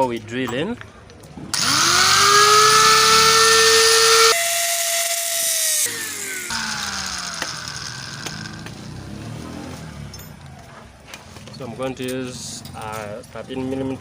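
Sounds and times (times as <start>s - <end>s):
electric drill whining: 1.5s - 9.0s
drill cutting metal hiss: 1.6s - 8.6s.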